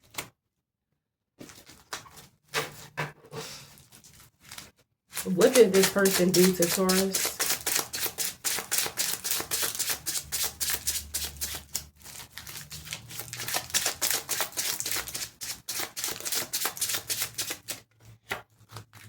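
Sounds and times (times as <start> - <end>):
cards being shuffled by hand: 3.8 - 19.0.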